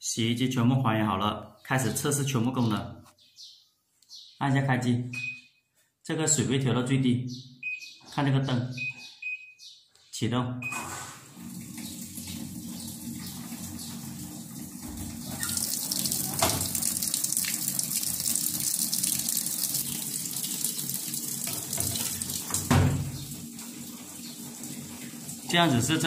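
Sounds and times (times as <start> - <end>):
washing machine low hum: 10.7 - 26.0
water rushing into drum: 11.2 - 26.0.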